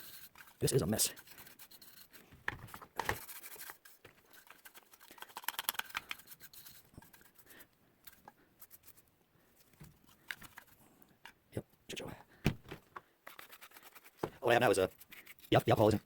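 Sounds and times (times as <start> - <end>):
paint brush scrubbing: 0.0 - 2.2, 3.2 - 9.1, 13.2 - 16.0.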